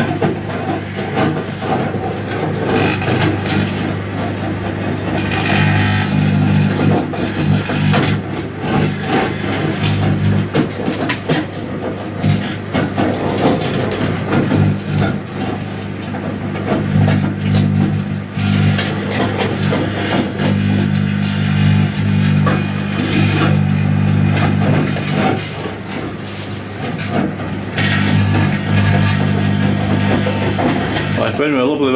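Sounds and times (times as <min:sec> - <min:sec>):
microwave oven humming: 0:00.0 - 0:31.8
battery sparking and crackling: 0:16.8 - 0:25.5, 0:27.7 - 0:31.4.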